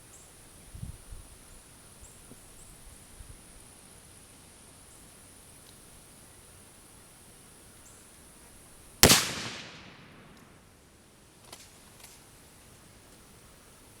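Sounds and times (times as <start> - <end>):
rifle shot with echo: 9.0 - 10.6.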